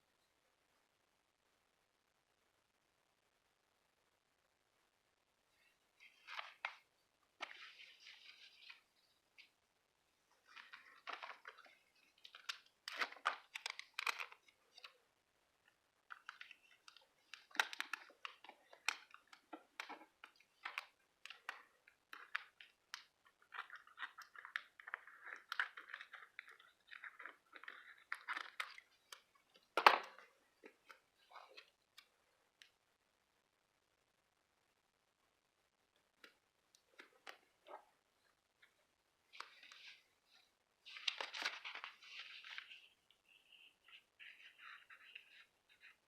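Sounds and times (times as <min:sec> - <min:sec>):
paper crinkling: 0:05.6 - 0:09.6, 0:10.3 - 0:32.1, 0:38.6 - 0:46.0.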